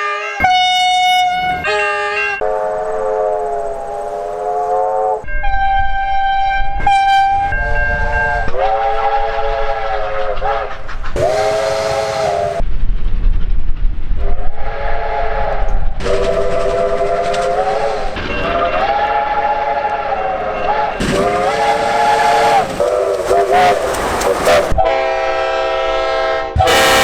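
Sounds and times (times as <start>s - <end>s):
train air horn blasts: 0.0s - 12.6s, 14.2s - 27.0s
train rumble: 0.0s - 27.0s
hiss: 21.0s - 24.7s.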